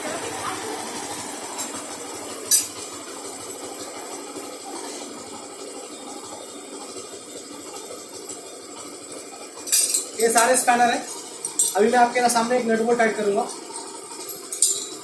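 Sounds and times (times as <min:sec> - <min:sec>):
motorcycle running: 0:00.0 - 0:08.2.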